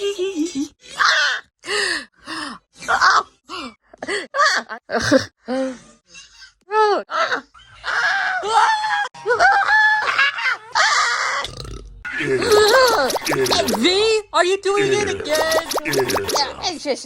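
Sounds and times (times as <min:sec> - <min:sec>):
person making nonsense vocal noises: 0:12.4 - 0:13.9, 0:15.2 - 0:16.8.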